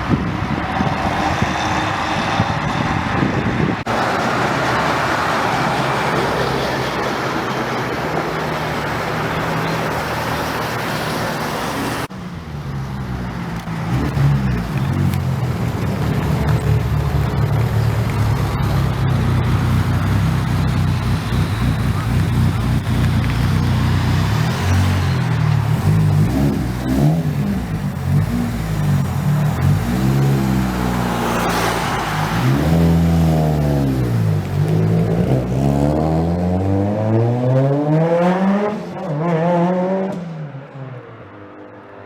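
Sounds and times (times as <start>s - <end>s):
car engine revving: 0.0s - 40.3s
cars driving on road: 0.0s - 42.0s.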